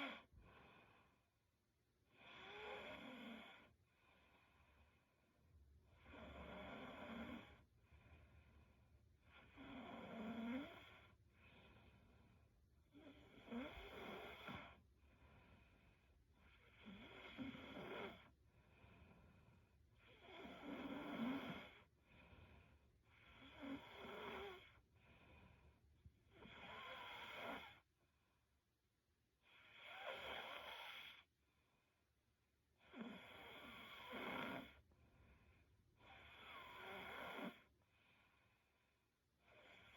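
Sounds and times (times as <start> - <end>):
girl snoring softly: 2.1 - 3.8, 6.0 - 7.7, 9.2 - 11.8, 12.9 - 14.8, 16.4 - 24.9, 26.3 - 27.9, 29.4 - 31.3, 32.8 - 34.9, 36.0 - 38.6, 39.4 - 39.9.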